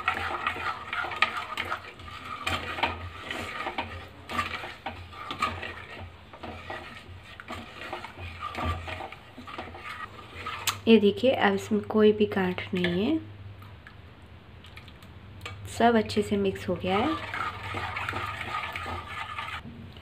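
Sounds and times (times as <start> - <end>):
spoon scraping and knocking pan: 0.0 - 10.8, 16.7 - 19.6.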